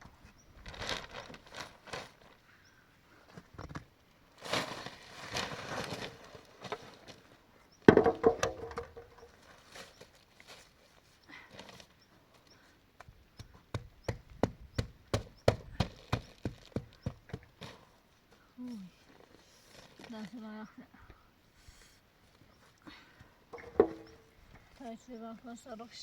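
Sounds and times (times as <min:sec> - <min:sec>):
wood rustling and scraping: 0:03.4 - 0:10.9, 0:23.6 - 0:24.8.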